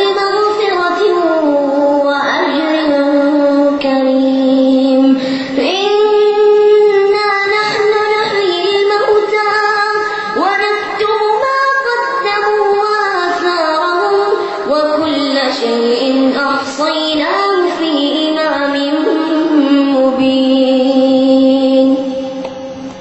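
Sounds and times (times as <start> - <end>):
boy chanting: 0.0 - 22.2.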